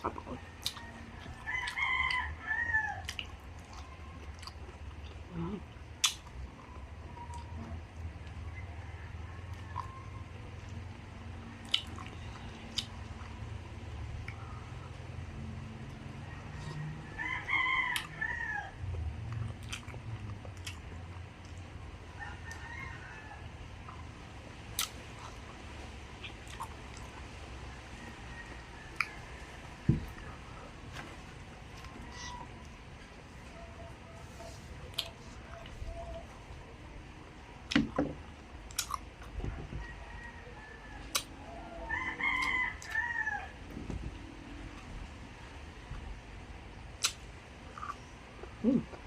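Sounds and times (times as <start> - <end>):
chewing: 0.0 - 2.3, 3.0 - 8.4, 9.5 - 10.9, 11.5 - 13.4, 17.8 - 22.7, 24.7 - 27.3, 27.9 - 36.6, 37.6 - 39.6, 41.0 - 41.3, 47.0 - 49.0
rooster crowing: 0.1 - 3.1, 8.4 - 10.4, 14.4 - 18.8, 22.1 - 23.6, 27.6 - 36.3, 39.4 - 44.2.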